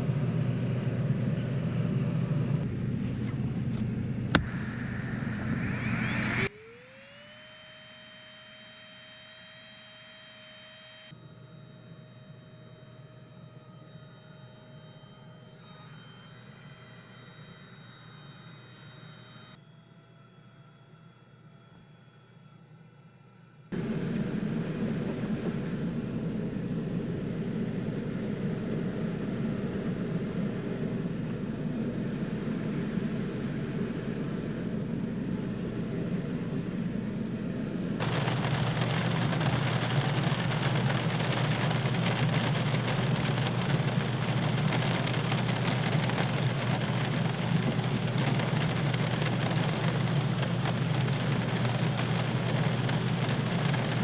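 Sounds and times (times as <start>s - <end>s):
steady rain falling: 38.0s - 54.0s.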